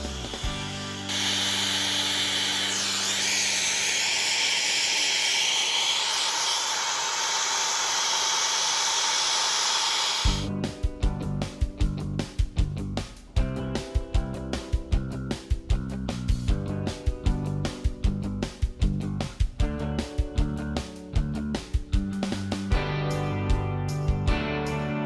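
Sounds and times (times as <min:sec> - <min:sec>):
background music: 0:00.0 - 0:03.9, 0:10.4 - 0:25.0
gas torch flame hissing: 0:00.0 - 0:10.5.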